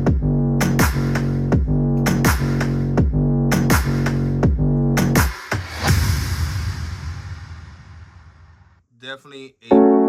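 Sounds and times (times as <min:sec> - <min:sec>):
deep kick drums: 0:00.0 - 0:05.3.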